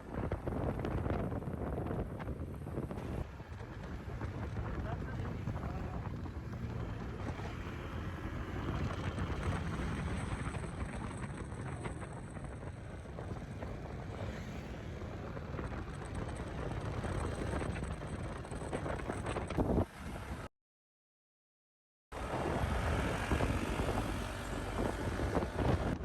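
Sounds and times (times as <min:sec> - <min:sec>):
wind noise on microphone: 0:00.0 - 0:20.5, 0:22.2 - 0:26.0
scooter engine running: 0:03.0 - 0:19.3.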